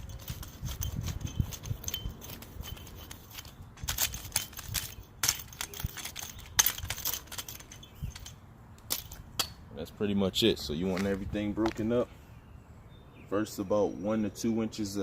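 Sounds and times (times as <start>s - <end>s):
garden tool scraping soil: 0.0s - 5.1s
metal tool striking: 0.9s - 9.6s.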